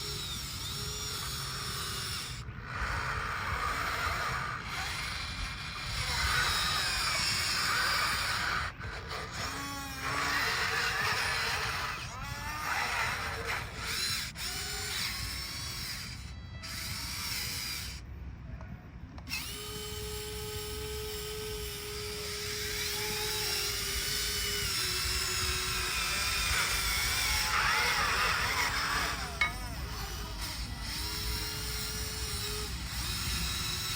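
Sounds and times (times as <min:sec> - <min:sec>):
small electric motors whining: 0:00.0 - 0:33.9.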